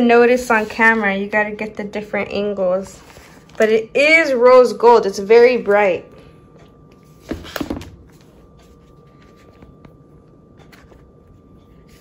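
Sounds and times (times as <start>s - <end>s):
laptop packaging knocks and rustles: 7.2s - 8.0s.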